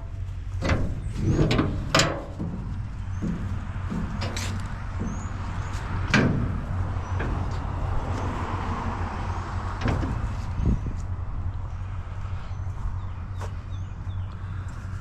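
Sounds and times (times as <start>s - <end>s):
hard knocks and clunks: 0.0s - 11.1s
low engine rumble: 0.0s - 15.0s.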